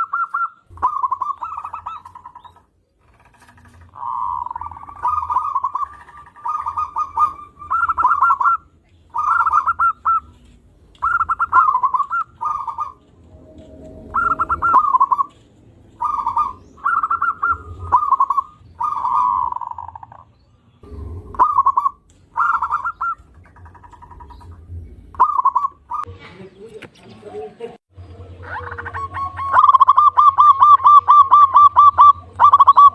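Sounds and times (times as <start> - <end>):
dove cooing: 0.0 - 13.1, 14.0 - 20.3, 20.9 - 26.1, 28.2 - 32.9.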